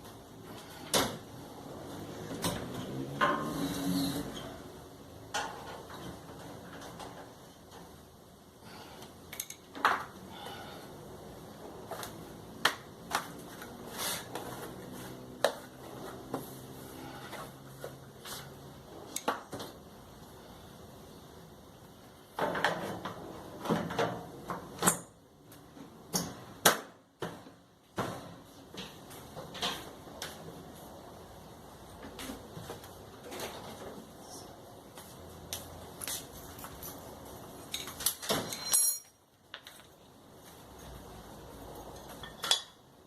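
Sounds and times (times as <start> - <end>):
clicks and knocks of tools and parts: 5.3 - 8.0, 9.0 - 10.2, 35.0 - 42.9.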